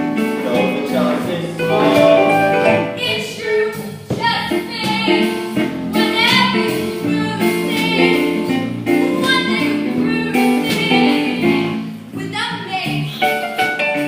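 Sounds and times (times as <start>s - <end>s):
instrumental accompaniment: 0.0s - 14.0s
person singing: 0.5s - 2.9s.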